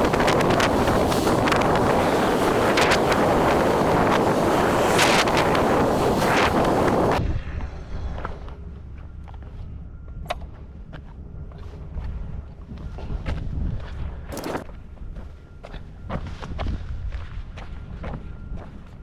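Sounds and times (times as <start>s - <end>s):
wind buffeting microphone: 0.0s - 7.2s.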